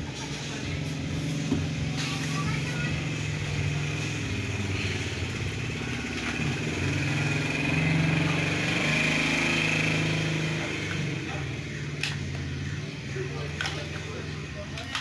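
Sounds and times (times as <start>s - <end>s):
small engine humming: 0.0s - 15.0s.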